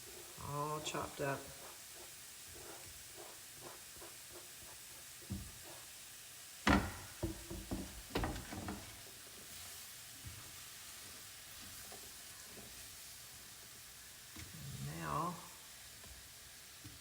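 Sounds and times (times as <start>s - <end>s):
utensils knocking on cookware: 6.7s - 8.9s.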